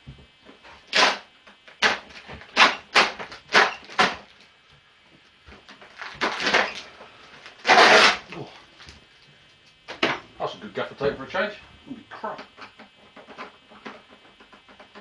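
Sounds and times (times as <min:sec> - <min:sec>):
tape being ripped off: 0:00.9 - 0:04.3, 0:05.7 - 0:06.9, 0:07.5 - 0:08.4.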